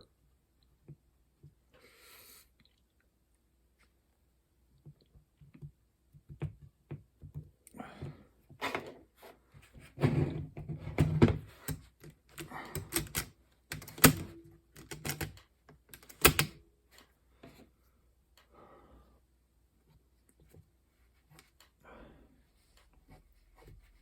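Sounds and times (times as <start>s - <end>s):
small parts clicking and scraping: 11.5s - 17.1s.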